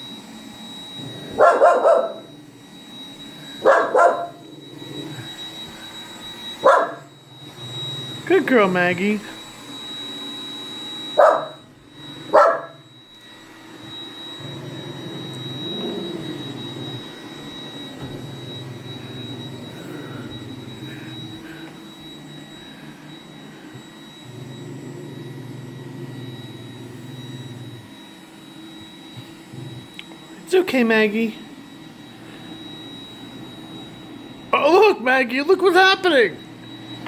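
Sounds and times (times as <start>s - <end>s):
robot vacuum whirring: 0.0s - 34.5s
dog bark: 1.4s - 2.3s, 3.6s - 4.4s, 6.6s - 7.1s, 11.2s - 11.6s, 12.3s - 12.8s.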